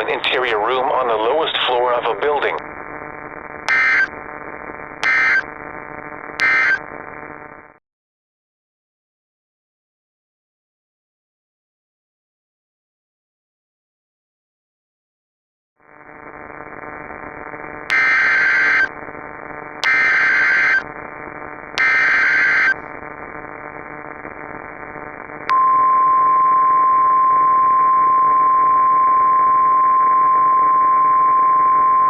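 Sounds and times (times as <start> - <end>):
radio static hiss: 0.0 - 7.8, 15.9 - 32.0
data bursts: 3.7 - 4.1, 5.0 - 5.5, 6.4 - 6.8, 19.8 - 20.8, 21.8 - 22.8
steady warning alarm tone: 3.7 - 4.1, 5.0 - 5.4, 6.4 - 6.8, 21.8 - 22.8.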